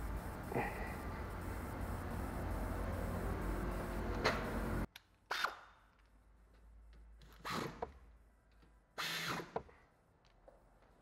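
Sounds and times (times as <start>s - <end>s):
steady noise: 0.0s - 4.9s.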